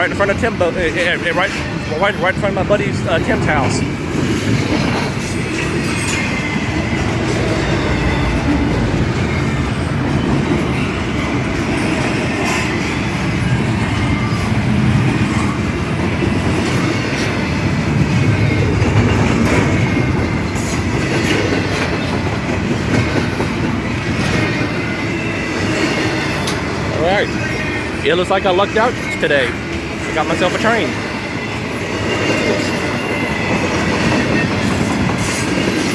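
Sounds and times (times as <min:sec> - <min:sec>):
train wheels rumbling on rail: 0:00.0 - 0:35.9
wheels clicking over rail joints: 0:09.1 - 0:35.9.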